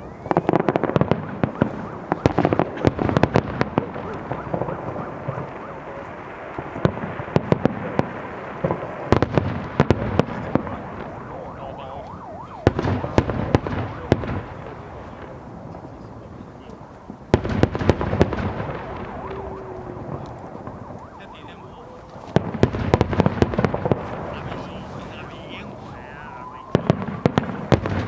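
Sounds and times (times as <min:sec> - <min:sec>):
fireworks bangs: 0:00.0 - 0:28.0
rumble of bursts: 0:17.4 - 0:28.0.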